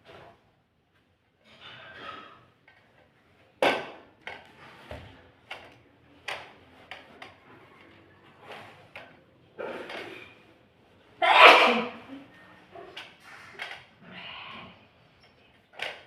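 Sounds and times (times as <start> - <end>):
hard objects knocking and clunking: 3.6 - 7.8.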